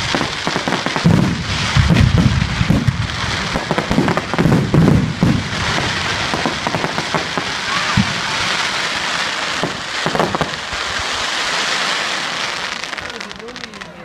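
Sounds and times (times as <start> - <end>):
firework burst: 0.0 - 14.0
fireworks crackling: 0.0 - 14.0
firework thump: 1.0 - 8.3.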